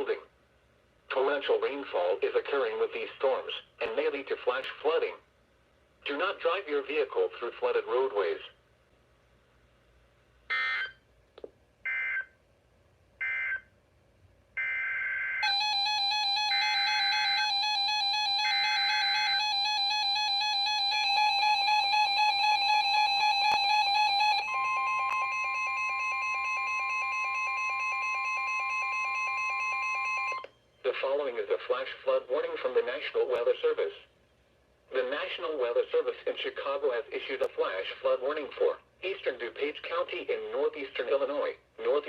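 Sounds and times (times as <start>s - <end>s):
weather radio alarm tone: 14.6s - 30.5s.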